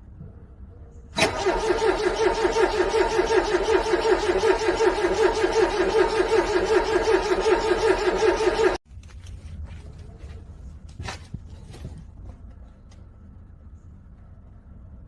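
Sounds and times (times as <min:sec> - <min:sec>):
car engine cranking: 0:01.2 - 0:08.8.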